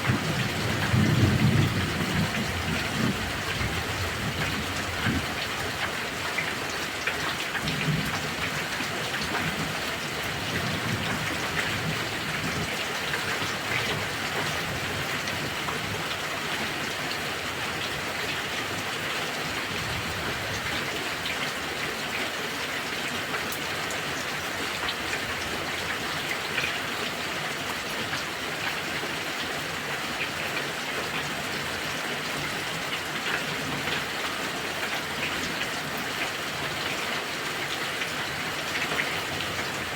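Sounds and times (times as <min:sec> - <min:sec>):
low thunder rumbling: 0:00.0 - 0:05.4
heavy rain falling: 0:00.0 - 0:39.9.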